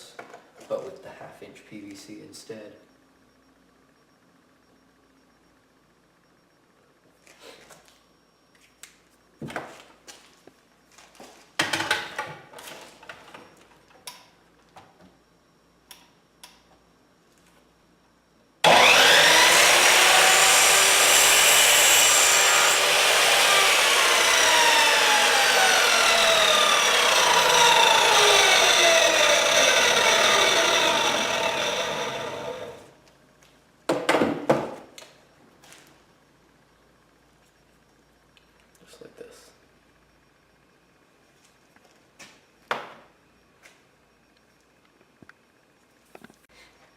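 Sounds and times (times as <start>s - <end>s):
power tool cutting pipe: 18.6s - 33.0s.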